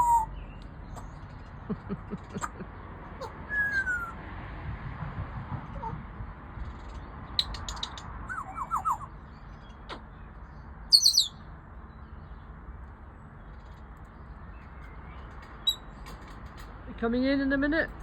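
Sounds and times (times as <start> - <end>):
road traffic: 0.0 - 18.0
bird chirps: 7.4 - 12.4, 14.2 - 16.1.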